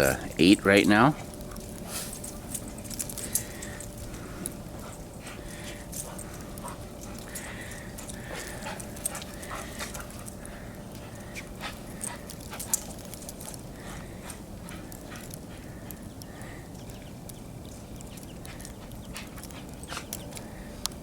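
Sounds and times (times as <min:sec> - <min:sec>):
dogs moving in snow: 0:00.0 - 0:16.8
low outdoor hiss: 0:00.0 - 0:21.0
small dog sounds: 0:18.1 - 0:20.5.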